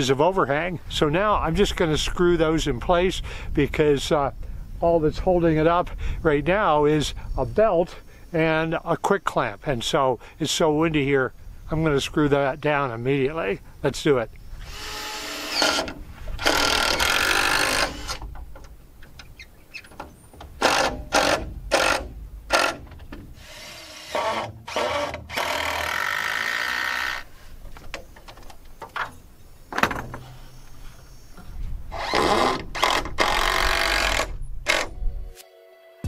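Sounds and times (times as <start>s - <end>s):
power drill driving screws: 14.6s - 18.2s, 20.6s - 22.8s, 23.4s - 27.3s, 31.9s - 34.9s.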